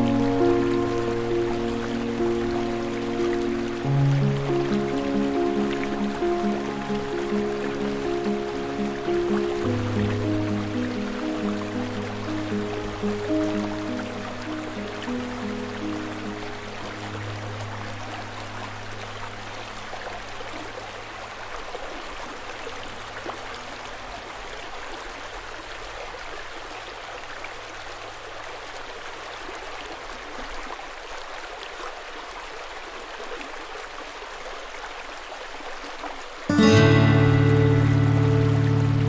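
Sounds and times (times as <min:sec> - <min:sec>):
river water rushing: 0:00.0 - 0:30.4, 0:36.5 - 0:39.0.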